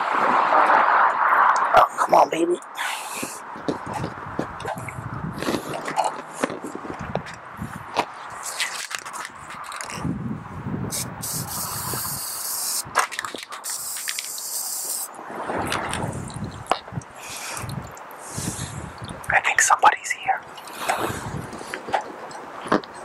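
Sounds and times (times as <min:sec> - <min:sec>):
hissing: 0:10.9 - 0:13.0, 0:13.6 - 0:15.1.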